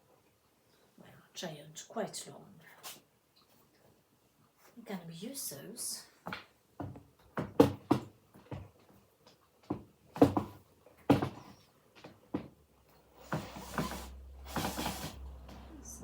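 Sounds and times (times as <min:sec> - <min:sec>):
tools knocking on wood: 0:06.3 - 0:08.8, 0:09.6 - 0:12.6.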